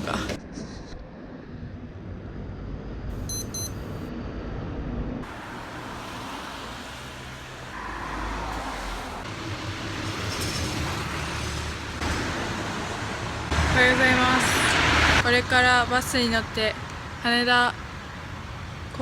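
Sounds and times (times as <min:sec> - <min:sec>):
traffic rumble: 0:00.0 - 0:19.0
high double beep: 0:03.2 - 0:03.9.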